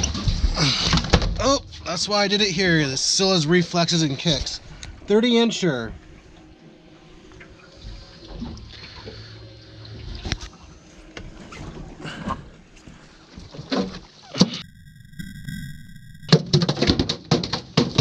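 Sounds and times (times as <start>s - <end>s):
water lapping against hull: 4.2s - 14.2s
high electronic tone: 14.6s - 16.5s.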